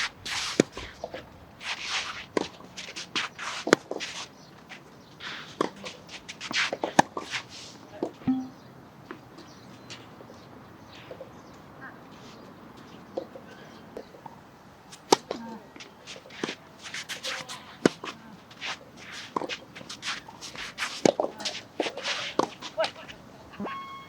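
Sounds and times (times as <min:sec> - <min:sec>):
racket hitting tennis ball: 0:08.3 - 0:08.7.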